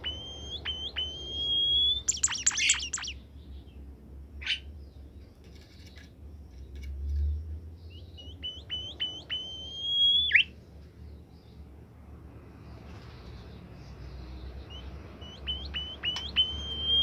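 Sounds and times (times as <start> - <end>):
bird singing: 0.0 - 3.2, 7.8 - 10.5, 14.1 - 17.0.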